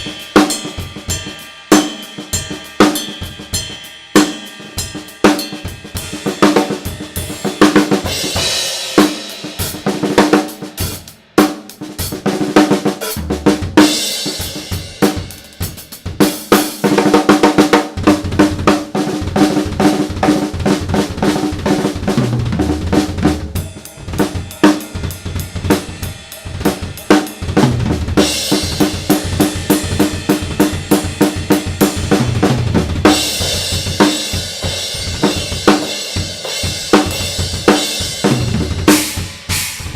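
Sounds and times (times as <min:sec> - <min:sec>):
cymbal wash: 0:00.0 - 0:11.4
drum kit groove: 0:00.0 - 0:39.9.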